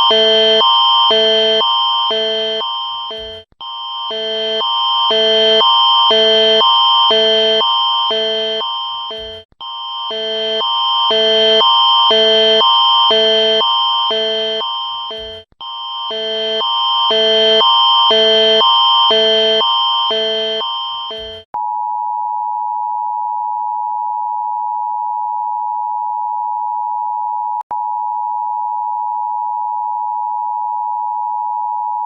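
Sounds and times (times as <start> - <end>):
steady electronic tone: 0.0 - 3.4, 4.1 - 9.4, 10.1 - 15.4, 16.1 - 21.4
synthesized two-chord alarm: 0.0 - 3.4, 4.0 - 9.4, 10.0 - 15.4, 16.1 - 21.4.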